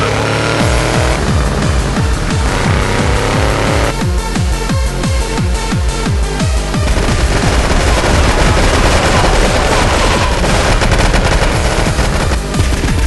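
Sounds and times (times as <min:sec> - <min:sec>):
rapid automatic gunfire: 0:06.8 - 0:13.0.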